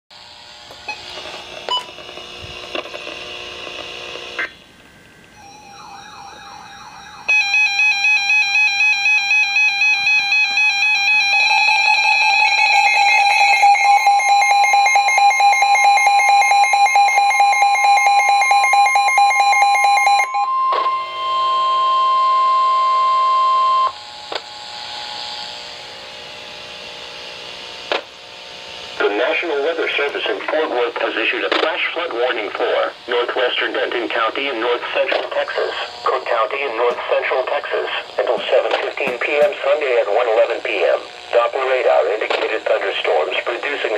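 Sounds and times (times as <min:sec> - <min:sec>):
steady alert tone: 0:05.4 - 0:09.0
pulsing electronic alarm: 0:05.4 - 0:25.7.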